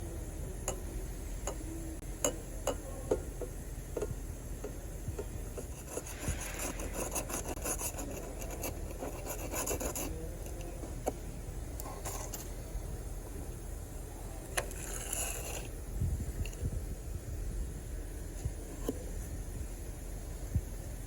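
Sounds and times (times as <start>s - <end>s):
low steady hum: 0.0s - 21.0s
rubbing and scraping: 5.6s - 10.9s, 14.6s - 15.7s.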